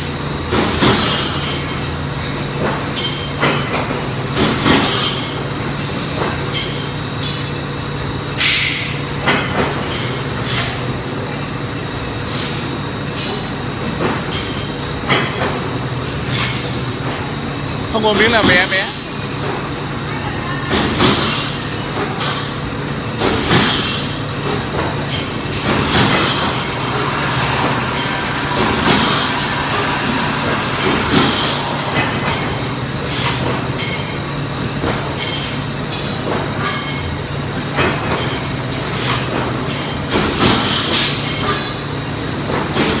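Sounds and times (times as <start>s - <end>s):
steady machine hum: 25.4s - 33.6s
plasma cutter hissing and screeching: 25.5s - 33.9s.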